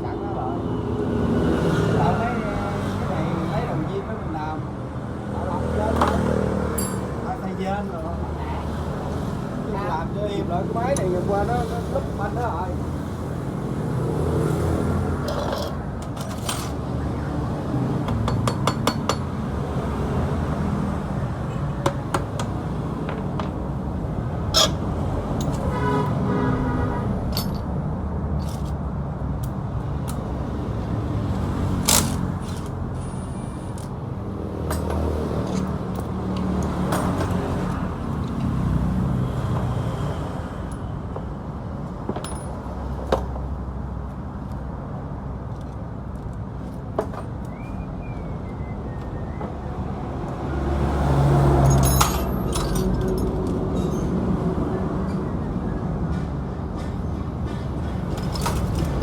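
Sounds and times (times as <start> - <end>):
metallic clicks and clinks: 27.3 - 27.7, 51.6 - 54.0.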